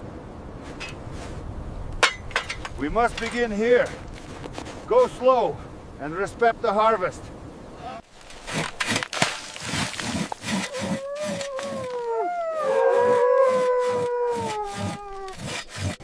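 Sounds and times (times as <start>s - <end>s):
saw cutting strokes: 8.4s - 12.0s, 12.9s - 16.0s
wavering animal howl: 10.7s - 15.4s.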